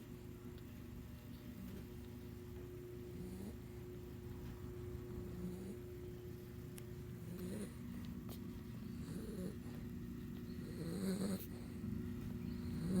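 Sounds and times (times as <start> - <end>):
dog snoring: 3.0 - 3.8, 5.2 - 6.0, 7.2 - 8.0, 8.8 - 13.0.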